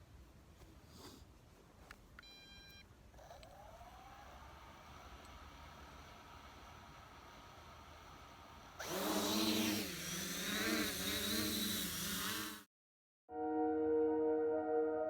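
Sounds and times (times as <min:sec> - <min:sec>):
drone propellers buzzing: 0:08.8 - 0:12.6
ambient music with held tones: 0:13.3 - 0:15.0.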